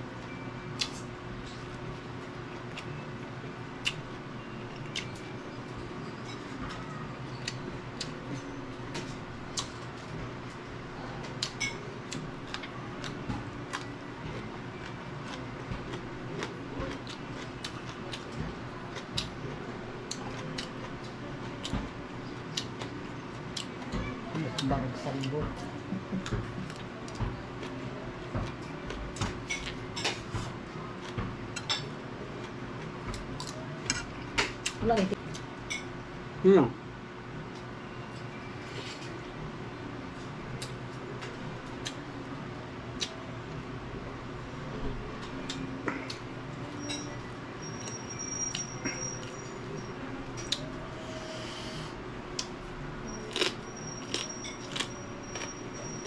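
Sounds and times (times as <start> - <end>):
steady low hum: 0.0 - 56.0
utensils clinking against dishes: 4.8 - 9.8, 11.3 - 12.6, 28.4 - 32.0, 33.4 - 34.7, 35.6 - 35.9, 46.7 - 51.3, 53.2 - 56.0
crunching raw vegetables: 53.2 - 56.0.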